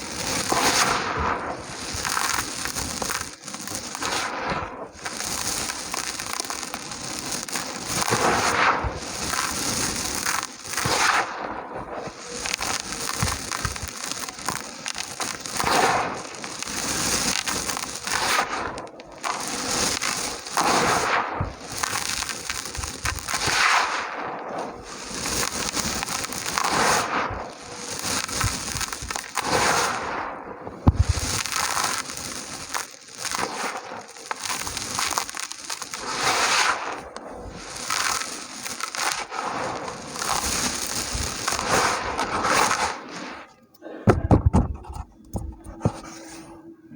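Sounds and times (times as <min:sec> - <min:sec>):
dirt crumbling and crunching: 0:05.1 - 0:23.7, 0:24.9 - 0:43.0.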